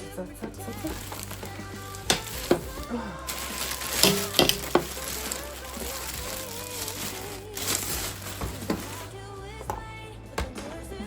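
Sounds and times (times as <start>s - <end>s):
song with sung melody: 0.0s - 11.0s
packaging crinkling and clicking: 0.8s - 9.1s.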